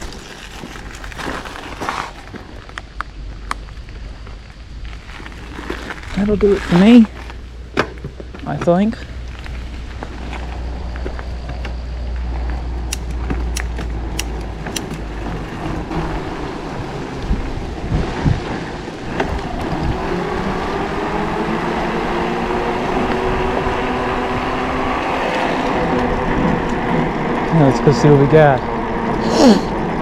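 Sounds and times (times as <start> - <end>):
tyre and wind noise: 0.0 - 27.9
sharp clicks: 12.9 - 15.1.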